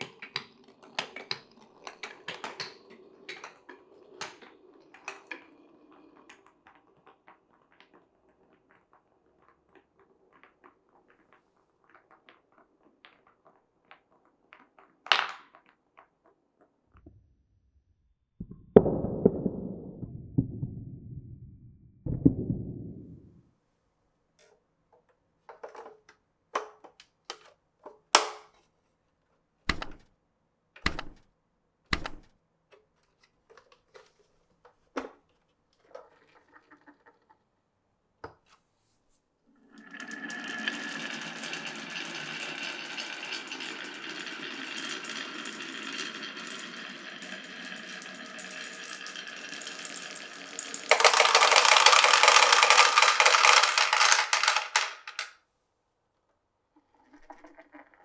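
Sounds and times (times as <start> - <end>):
marbles clicking and knocking: 0.0 - 16.3, 29.7 - 30.0, 30.8 - 31.2, 31.9 - 32.3, 47.4 - 55.3
marbles rolling on wooden track: 0.0 - 16.8, 39.7 - 55.3.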